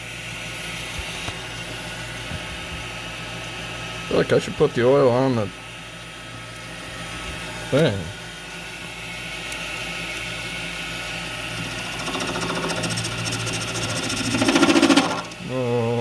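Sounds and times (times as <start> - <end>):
metal lathe motor hum: 5.2 - 16.0
fast rhythmic cutting chatter: 11.6 - 15.6.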